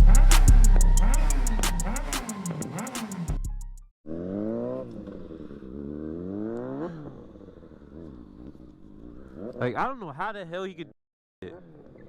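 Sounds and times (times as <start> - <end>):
music: 0.0 - 3.9
motorcycle engine accelerating: 0.0 - 9.6.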